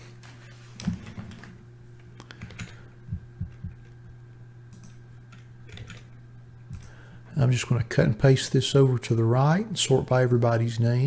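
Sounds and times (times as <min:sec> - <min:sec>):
steady low hum: 0:00.0 - 0:11.0
keyboard and mouse clicks: 0:04.7 - 0:06.1, 0:06.7 - 0:07.0.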